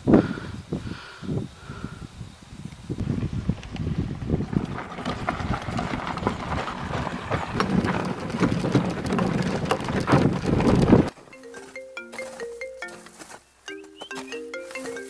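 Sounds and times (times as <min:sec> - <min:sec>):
wind-buffeted rumbling: 0:00.0 - 0:11.1
horse hooves clip-clopping: 0:03.0 - 0:15.0
mallet-like musical notes: 0:11.2 - 0:15.0.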